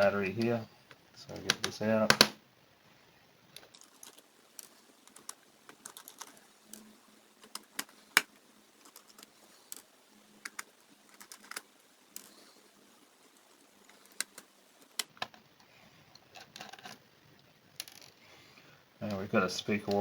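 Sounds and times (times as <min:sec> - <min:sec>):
light clicks and taps on laptop: 0:01.3 - 0:02.3.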